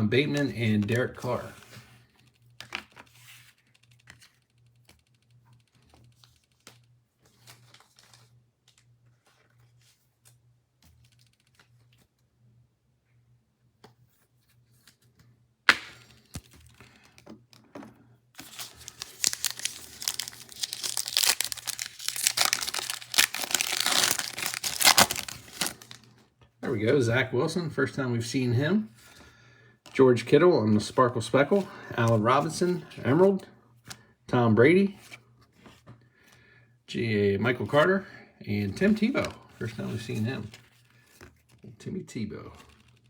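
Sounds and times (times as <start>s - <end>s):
trading cards clicking: 18.4s - 26.0s
wrapper crinkling and tearing: 18.4s - 26.1s.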